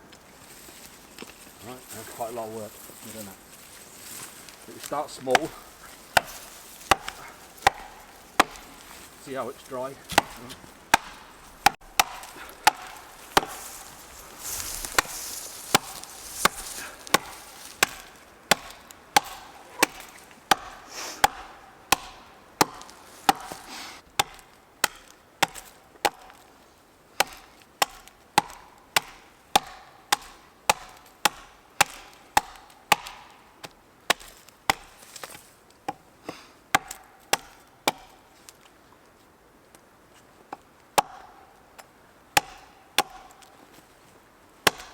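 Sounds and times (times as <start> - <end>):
axe chopping wood: 5.1 - 26.5, 27.2 - 38.3, 40.6 - 43.6, 44.6 - 44.9.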